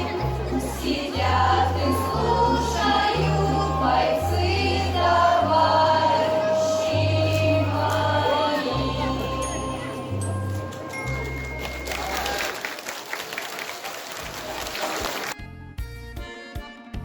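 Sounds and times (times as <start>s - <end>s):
choir singing: 0.0s - 10.3s
instrumental accompaniment: 0.0s - 12.4s.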